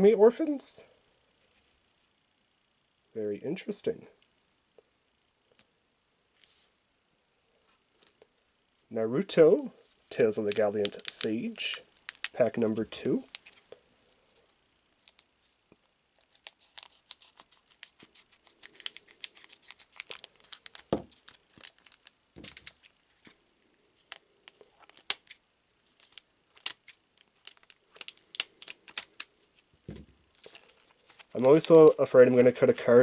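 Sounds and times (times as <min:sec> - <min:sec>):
foil wrapper crackling and tearing: 0:16.2 - 0:23.0, 0:24.7 - 0:29.6, 0:30.4 - 0:32.6.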